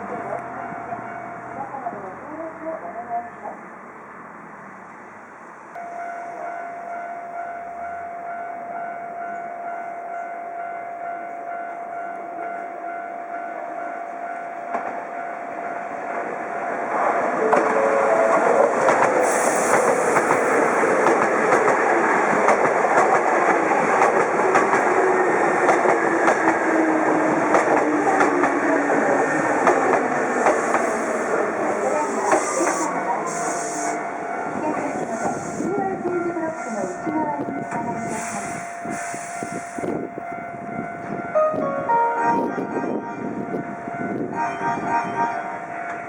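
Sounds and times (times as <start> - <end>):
train wheels clacking: 17.4 - 34.0.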